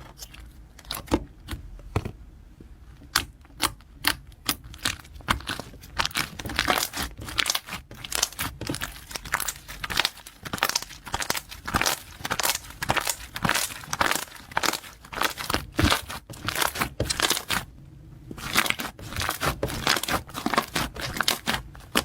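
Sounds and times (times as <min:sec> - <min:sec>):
slime squishing with sticky pops: 0:00.0 - 0:02.0, 0:03.0 - 0:17.7, 0:18.4 - 0:22.0.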